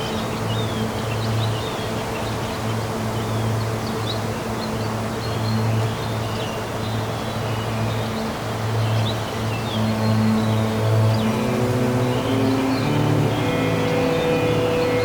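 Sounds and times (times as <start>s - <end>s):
slow ambient music: 0.0s - 15.0s
birds chirping: 7.4s - 15.0s
waterfall rushing: 9.3s - 15.0s.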